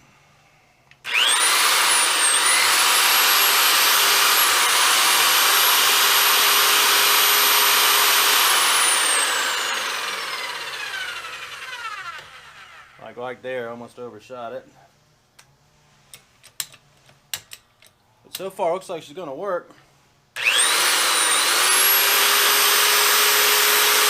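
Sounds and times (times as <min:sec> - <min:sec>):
pipe threader motor whining: 0:01.0 - 0:13.0, 0:20.4 - 0:24.0.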